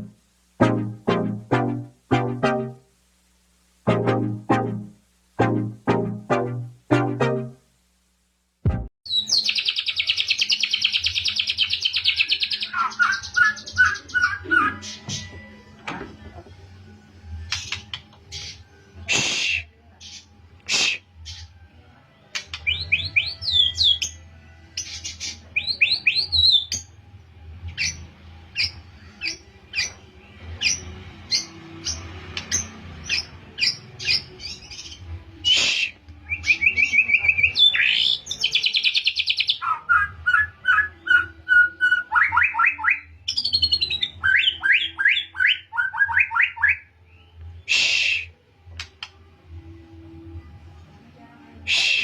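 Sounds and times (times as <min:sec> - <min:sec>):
songbird singing trills: 0:09.1 - 0:15.6, 0:22.3 - 0:26.9.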